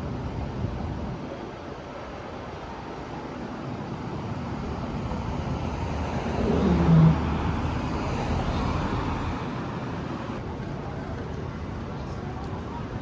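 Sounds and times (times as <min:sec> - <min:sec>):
street traffic: 0:00.0 - 0:13.0
vehicle passing by: 0:05.1 - 0:10.4.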